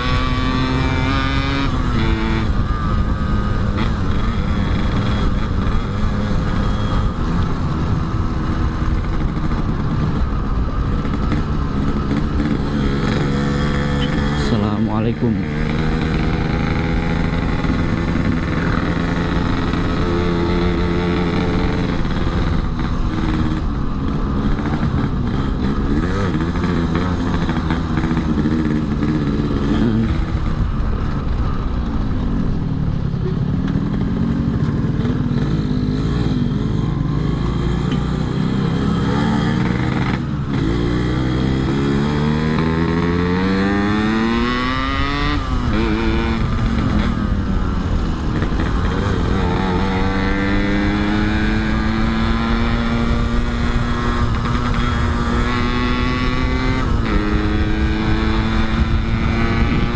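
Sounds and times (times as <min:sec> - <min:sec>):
two-stroke motorcycle engine: 0:00.0 - 0:59.9.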